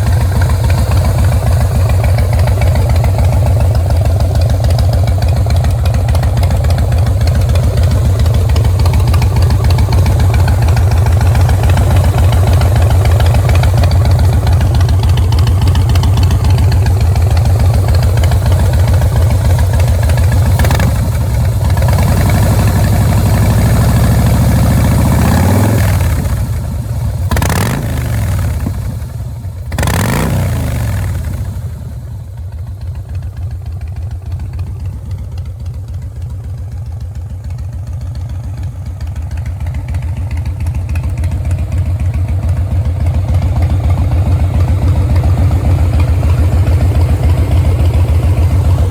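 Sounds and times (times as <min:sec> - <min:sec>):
motorcycle engine idling and revving: 0:00.0 - 0:48.9.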